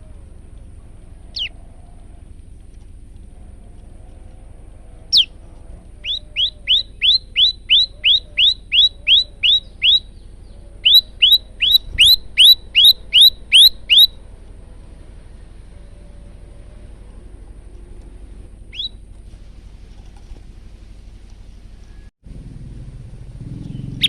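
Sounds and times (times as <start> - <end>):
bird singing ringing notes: 1.0 - 2.1, 4.8 - 17.3, 18.2 - 19.1.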